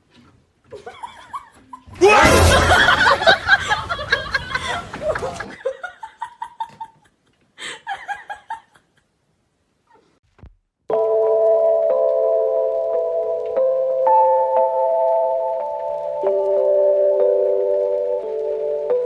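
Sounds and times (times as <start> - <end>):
people laughing hard: 0.8 - 8.8.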